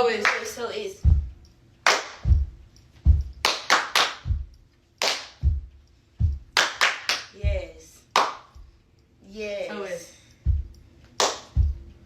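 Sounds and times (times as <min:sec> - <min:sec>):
hand claps: 0:00.2 - 0:00.6, 0:01.8 - 0:02.5, 0:03.1 - 0:07.4, 0:08.1 - 0:08.7, 0:11.1 - 0:11.9
foot stomps on floor: 0:01.0 - 0:01.3, 0:02.2 - 0:03.4, 0:04.2 - 0:04.5, 0:05.4 - 0:06.6.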